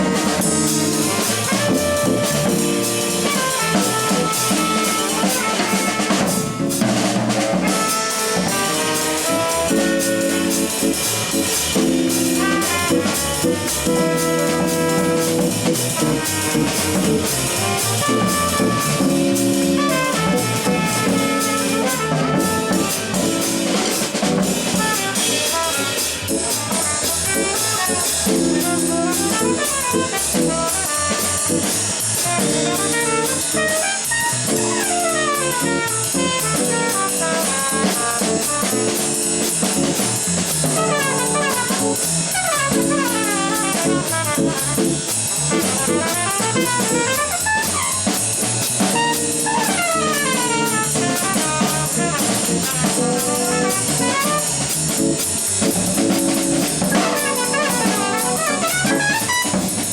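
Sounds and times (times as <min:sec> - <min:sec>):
organ chords: 0:00.0 - 0:33.6, 0:47.8 - 0:59.9
horn solo: 0:00.0 - 0:59.9
live jazz band: 0:00.0 - 0:59.9.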